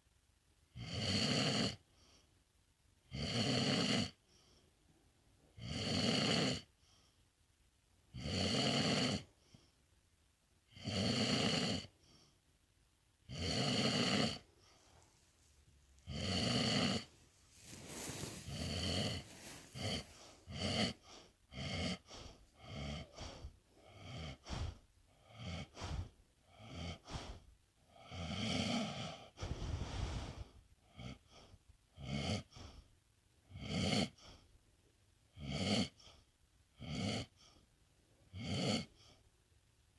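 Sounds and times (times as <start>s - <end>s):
pet snoring: 0.7s - 2.2s, 3.0s - 4.4s, 5.5s - 6.7s, 8.1s - 9.6s, 10.7s - 12.3s, 13.2s - 15.1s, 16.0s - 34.5s, 35.3s - 37.6s, 38.3s - 39.2s
short snorts and breaths: 13.3s - 15.4s, 16.0s - 34.5s, 38.3s - 39.2s.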